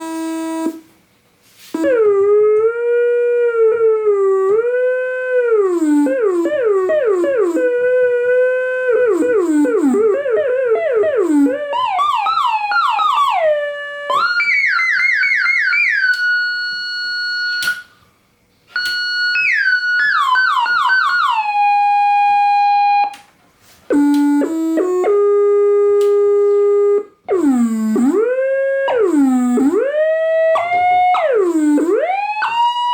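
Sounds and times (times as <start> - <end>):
analog synthesizer notes: 1.8 - 18.0, 18.8 - 23.2, 23.9 - 32.9.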